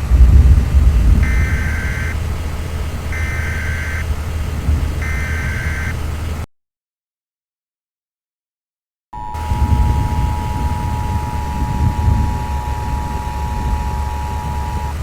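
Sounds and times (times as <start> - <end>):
low vehicle rumble: 0.0 - 6.5, 9.2 - 15.0
harsh buzzing alert chirps: 1.2 - 4.4, 5.0 - 6.3.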